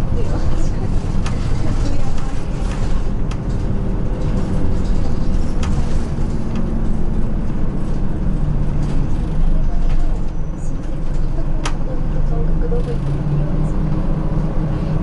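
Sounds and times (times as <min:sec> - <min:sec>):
bus engine and road rumble: 0:00.0 - 0:15.0
engine hum shifting in pitch: 0:00.0 - 0:15.0
sharp clicks and rattles: 0:00.2 - 0:14.0.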